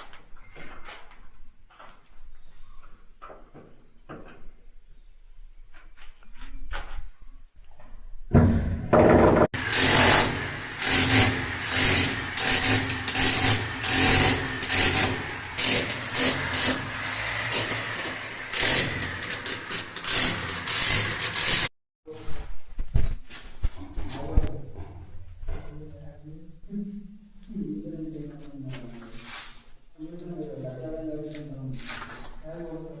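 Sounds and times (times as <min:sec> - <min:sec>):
power tool whining under load: 0:09.0 - 0:21.7.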